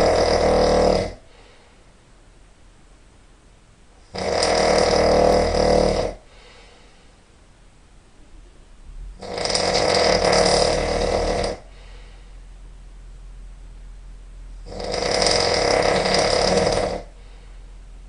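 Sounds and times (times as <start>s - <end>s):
person snoring loudly: 0.0s - 1.3s, 4.1s - 6.4s, 9.2s - 12.0s, 14.6s - 17.2s
quiet breathing: 1.1s - 2.0s, 6.1s - 7.3s, 11.0s - 12.8s, 16.3s - 18.0s.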